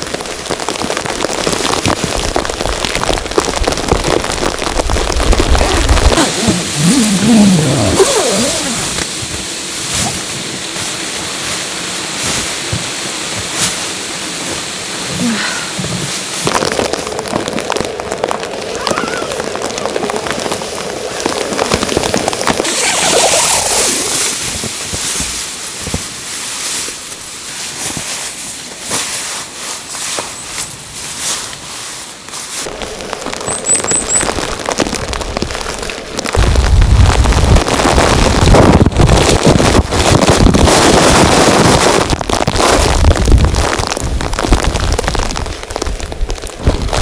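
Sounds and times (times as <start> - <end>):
snow pattering on surfaces: 0.0 - 47.0
steady hiss: 6.0 - 17.1, 22.6 - 34.7
wind buffeting microphone: 23.9 - 26.4, 32.6 - 47.0.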